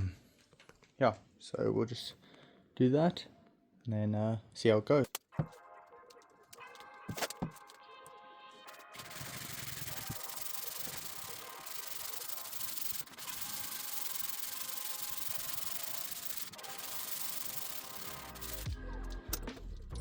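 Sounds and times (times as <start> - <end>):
sandpaper rubbing on painted panel: 8.8 - 18.7.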